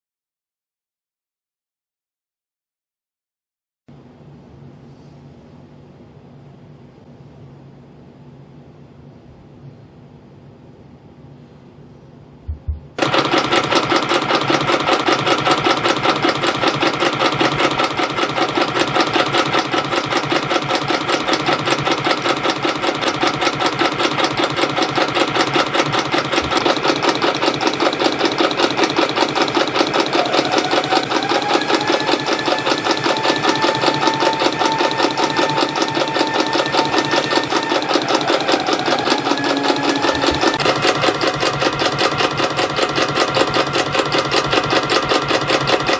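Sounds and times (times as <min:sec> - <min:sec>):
high machine tone: 0:12.5 - 0:45.9
machine clatter with whine: 0:12.7 - 0:45.9.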